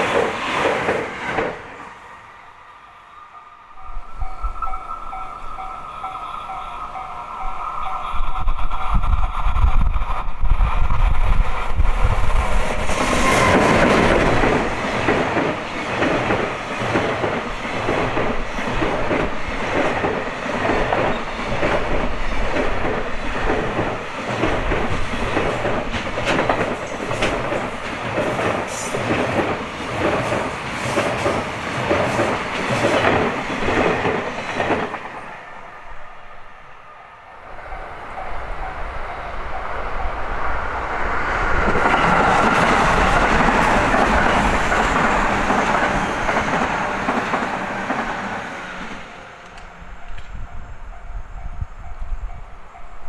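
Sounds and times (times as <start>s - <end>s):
electric train passing: 0.0s - 53.0s
train wheels clicking over rail joints: 9.6s - 35.3s.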